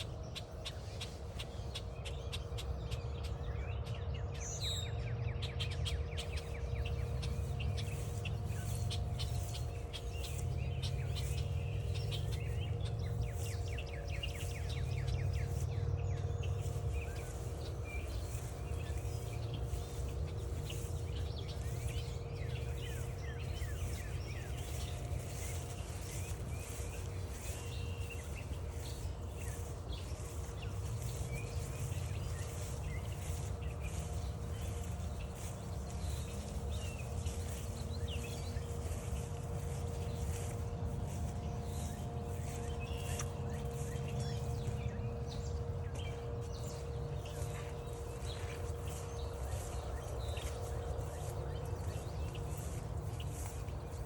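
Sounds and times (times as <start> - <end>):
faint hum: 0.0 - 54.0
songbirds chirping: 0.0 - 54.0.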